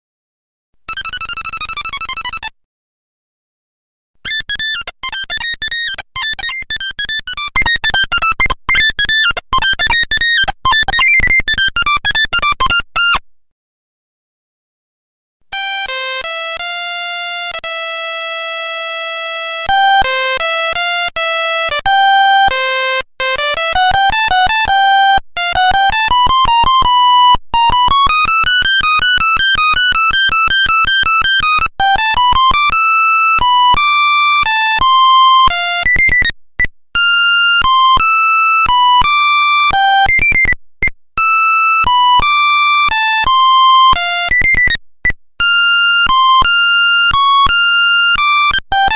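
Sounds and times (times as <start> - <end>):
monophonic ringtone melody: 4.3 - 13.2.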